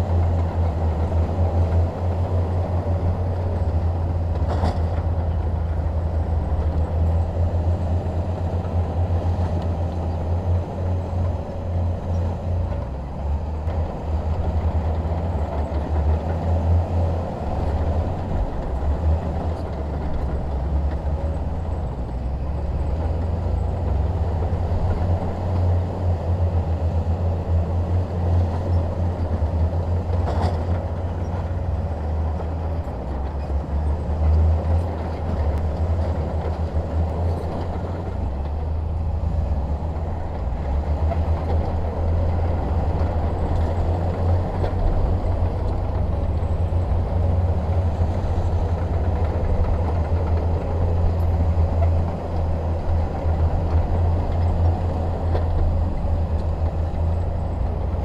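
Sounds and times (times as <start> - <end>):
diesel engine rumbling: 0.0 - 58.0.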